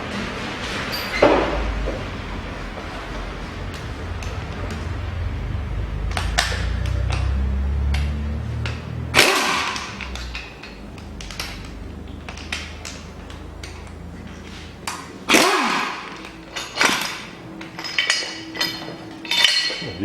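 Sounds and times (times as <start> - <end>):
light metal clinks: 16.1 - 20.0.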